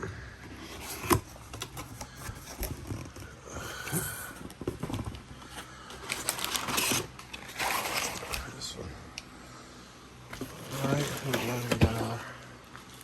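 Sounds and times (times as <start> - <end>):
cardboard box rustling and scraping: 0.4 - 3.4, 4.3 - 8.5, 10.3 - 12.2.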